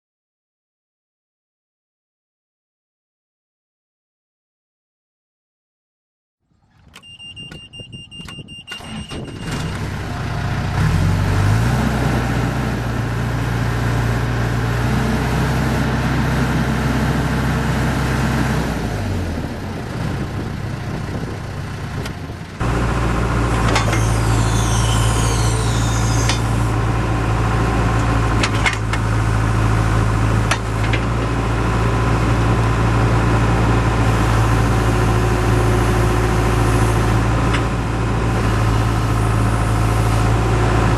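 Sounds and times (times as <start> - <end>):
diesel engine starting and running: 6.4 - 40.9
high steady cranking tone: 23.8 - 26.7.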